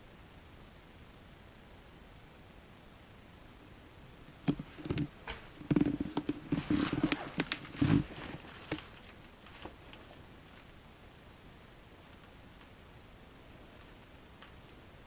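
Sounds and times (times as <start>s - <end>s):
dull thuds: 4.5s - 9.0s
sharp clicks and knocks: 4.5s - 10.2s.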